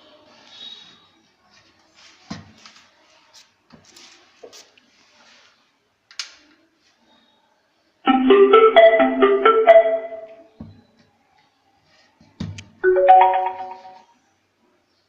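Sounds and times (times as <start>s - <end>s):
marimba-like chime: 8.1s - 10.4s, 12.8s - 14.0s.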